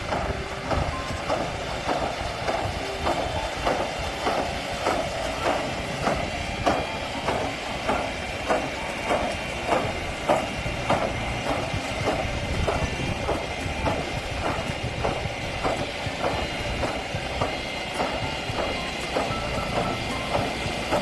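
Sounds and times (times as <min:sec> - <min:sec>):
machine rumbling with regular clack: 0:00.0 - 0:21.0.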